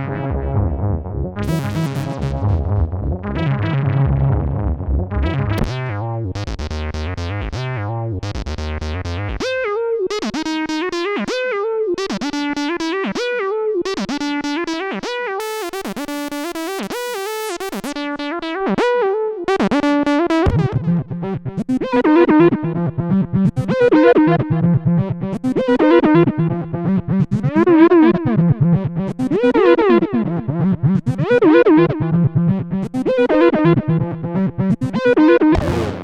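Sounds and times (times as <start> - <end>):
deep synth bass: 0.1 - 9.4, 35.6 - 36.0
synthesizer sequenced line: 35.4 - 36.0.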